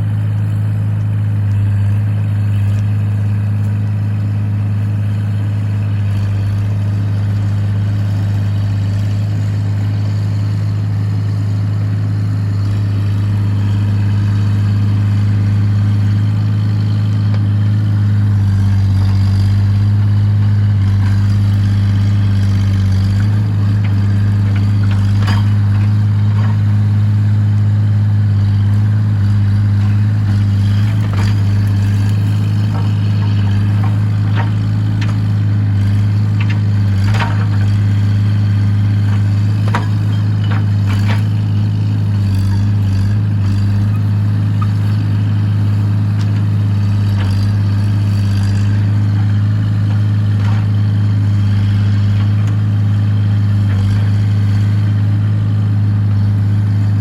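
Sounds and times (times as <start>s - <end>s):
excavator engine humming: 0.0s - 57.0s.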